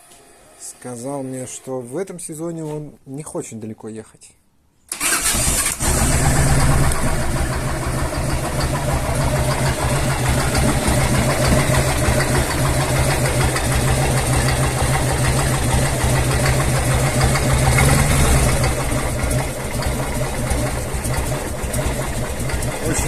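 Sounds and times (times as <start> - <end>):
motorcycle engine idling with knock: 7.4 - 17.7.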